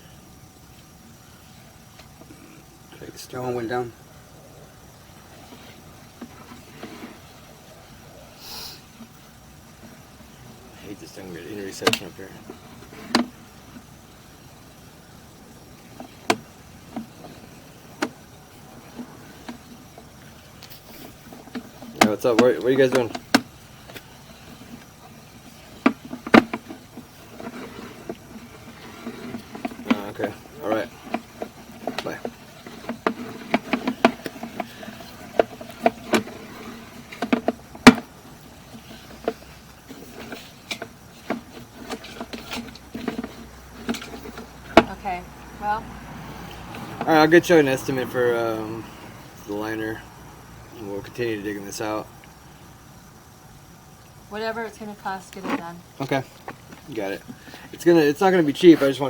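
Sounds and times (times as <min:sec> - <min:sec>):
low steady hiss: 0:00.0 - 0:59.0
sharp clicks and knocks: 0:11.7 - 0:13.3.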